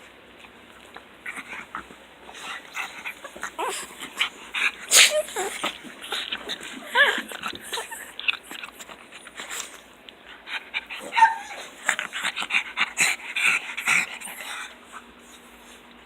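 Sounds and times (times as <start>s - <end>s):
dogs panting: 0.3s - 16.0s
dogs snorting: 0.5s - 15.9s
dogs whimpering: 1.3s - 9.7s, 10.5s - 14.8s
dog whining squeal: 11.0s - 11.7s.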